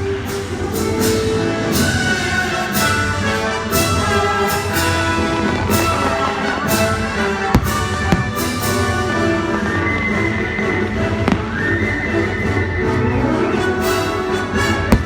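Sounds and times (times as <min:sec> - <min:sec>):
orchestral music over loudspeakers: 0:00.0 - 0:15.0
firework bangs: 0:04.0 - 0:13.0, 0:13.8 - 0:15.0.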